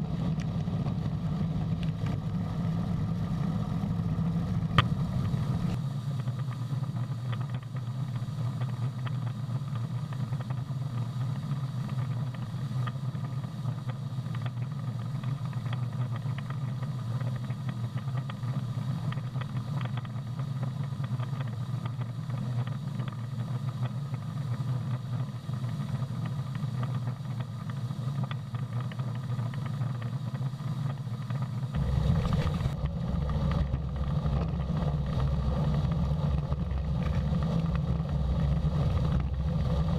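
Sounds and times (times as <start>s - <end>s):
deep rumble: 0.0s - 12.5s, 31.2s - 39.9s
harvesting machinery engine running: 31.5s - 39.9s.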